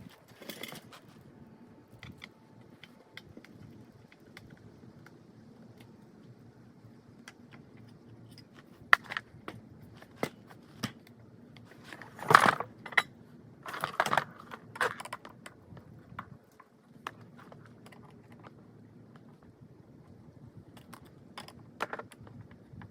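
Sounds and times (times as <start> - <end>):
objects clattering: 0.0 - 1.3, 11.7 - 15.5.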